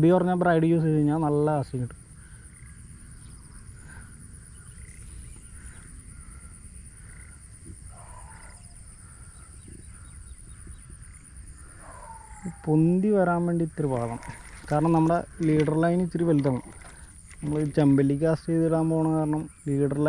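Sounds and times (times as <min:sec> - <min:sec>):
distant animal calls: 0:02.0 - 0:19.6
wind on microphone: 0:09.5 - 0:12.7.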